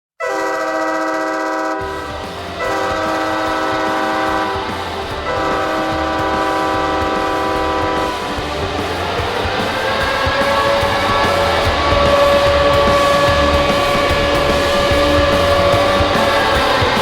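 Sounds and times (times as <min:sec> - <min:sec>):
arena goal horn blasts: 0:00.2 - 0:08.3.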